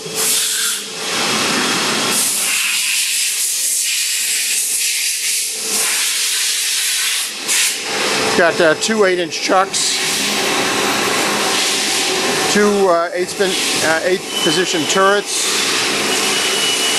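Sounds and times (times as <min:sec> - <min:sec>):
machine hissing: 0:00.0 - 0:16.9.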